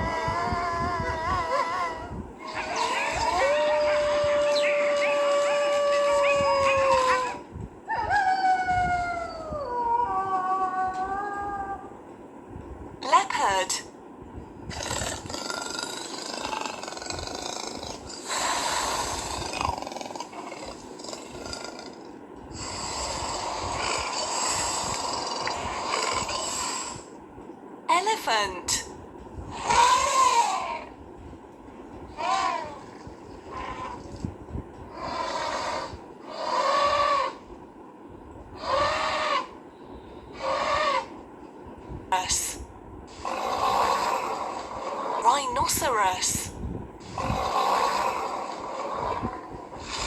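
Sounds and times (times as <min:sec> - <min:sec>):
elephant trumpeting: 0:00.0 - 0:07.5, 0:29.5 - 0:31.0, 0:32.1 - 0:34.2, 0:35.0 - 0:37.5, 0:38.6 - 0:39.6, 0:40.3 - 0:41.2, 0:43.2 - 0:45.5
large animal calling: 0:00.0 - 0:11.9, 0:29.5 - 0:31.0, 0:32.1 - 0:34.3, 0:34.9 - 0:37.5, 0:38.6 - 0:41.2.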